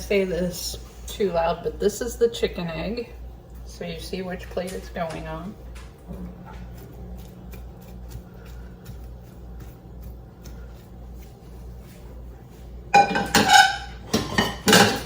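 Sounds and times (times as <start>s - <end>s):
low kitchen hum: 0.0s - 15.0s
utensil clattering on pan and plate: 13.0s - 15.0s.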